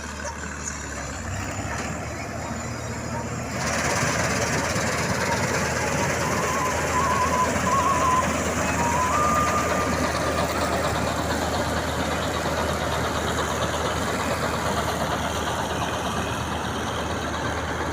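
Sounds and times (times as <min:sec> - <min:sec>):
tractor engine running: 0:00.0 - 0:17.9
high steady tone: 0:05.9 - 0:10.9.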